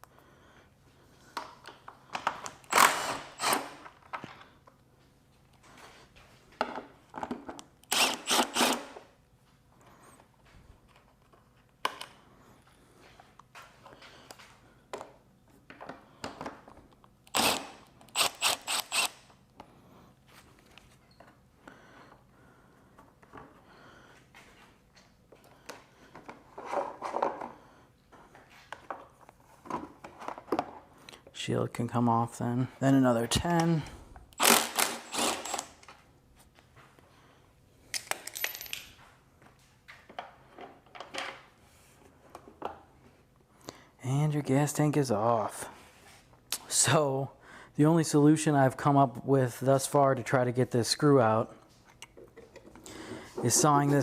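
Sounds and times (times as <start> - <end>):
ratchet wrench ratcheting: 17.3 - 19.2.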